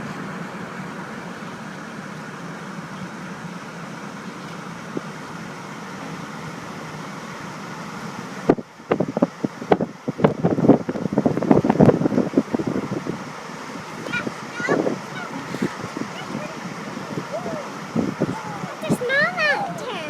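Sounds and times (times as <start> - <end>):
wind buffeting microphone: 8.4 - 20.0.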